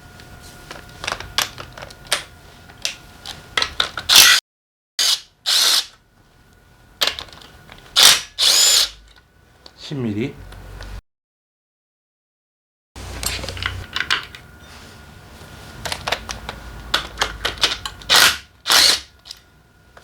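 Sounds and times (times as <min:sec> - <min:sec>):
metal tools clinking: 0:13.2 - 0:14.2.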